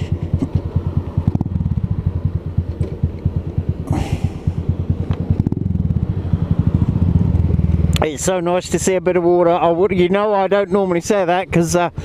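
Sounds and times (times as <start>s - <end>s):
motorcycle engine running: 0.0s - 9.2s.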